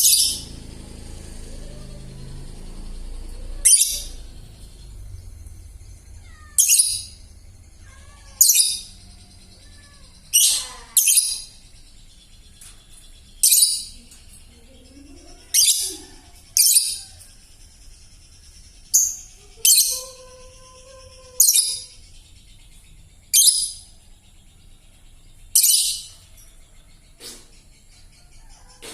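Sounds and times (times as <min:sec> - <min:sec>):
young bird raspy chirps: 0:09.6 - 0:14.1.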